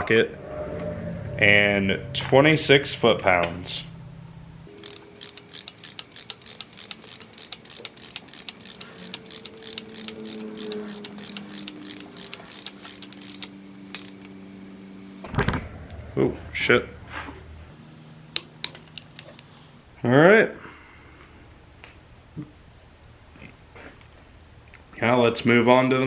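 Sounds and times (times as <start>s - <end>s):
hand ratchet clicking: 4.7s - 15.2s, 17.7s - 19.8s.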